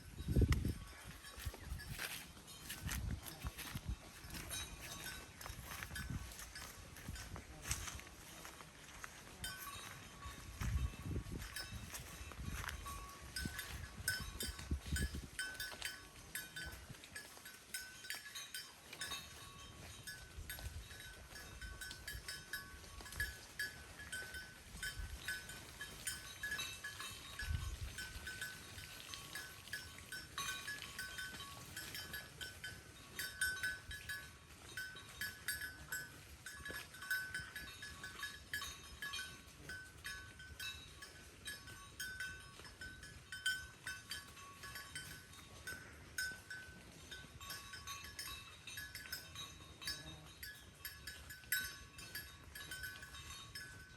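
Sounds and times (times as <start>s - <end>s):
bell clinking: 0.1s - 53.9s.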